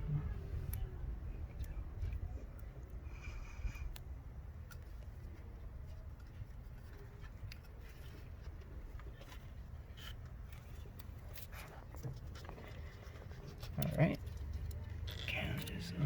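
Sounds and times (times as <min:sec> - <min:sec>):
steady low rumble: 0:00.0 - 0:06.0.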